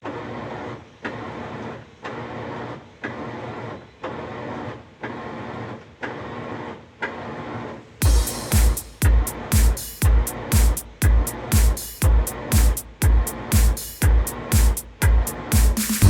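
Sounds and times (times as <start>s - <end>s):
washing machine whirring: 0.0s - 16.0s
electronic kick-drum beat: 8.0s - 16.0s.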